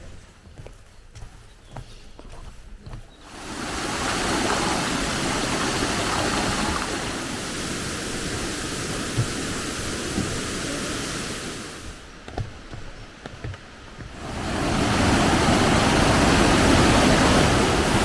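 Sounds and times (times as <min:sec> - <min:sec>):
waterfall rushing: 0:03.2 - 0:12.1, 0:14.1 - 0:18.0.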